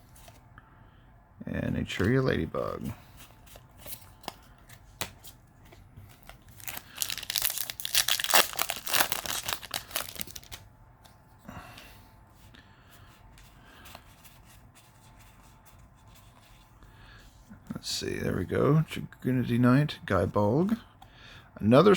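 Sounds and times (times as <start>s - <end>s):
handling sounds: 5.0s - 10.6s
foil wrapper tearing and crinkling: 6.2s - 10.6s.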